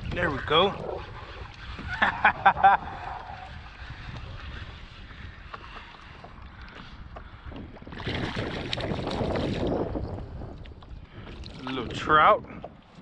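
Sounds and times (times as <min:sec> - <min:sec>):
splashing water: 0:00.0 - 0:13.0
wind buffeting microphone: 0:00.0 - 0:13.0.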